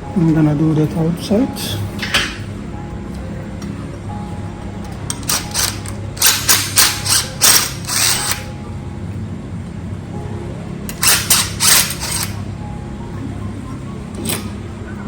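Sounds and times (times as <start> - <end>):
background music: 0.0 - 15.0
power drill drilling: 5.6 - 8.5, 10.9 - 12.4.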